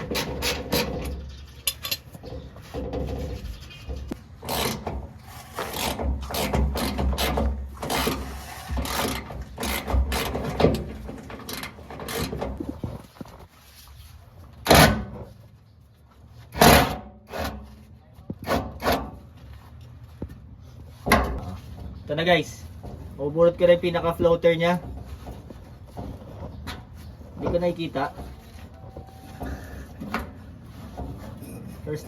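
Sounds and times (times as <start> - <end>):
scraping and rubbing on metal tank: 0.0 - 15.4, 20.6 - 32.0.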